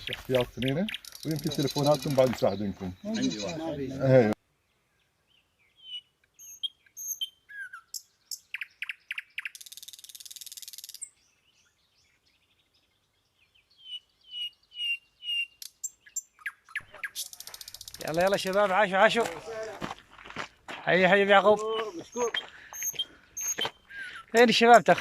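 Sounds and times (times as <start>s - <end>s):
small birds chirping: 0.0s - 25.0s
buzzy bird rattle: 17.2s - 18.6s.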